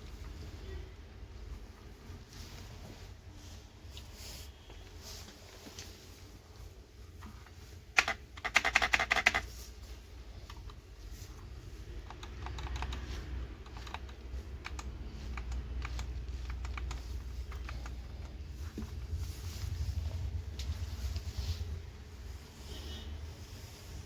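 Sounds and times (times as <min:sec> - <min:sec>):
mechanical keyboard typing: 0:07.9 - 0:09.5, 0:12.0 - 0:18.4.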